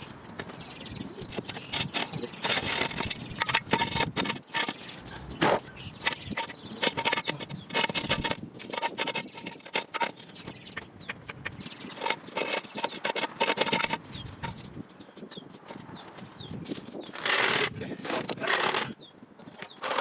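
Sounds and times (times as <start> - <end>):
metal tools clinking on metal: 1.3 - 10.4.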